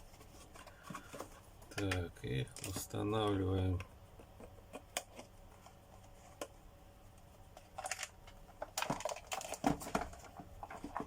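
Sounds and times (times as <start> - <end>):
crinkling rustle: 7.2 - 11.0.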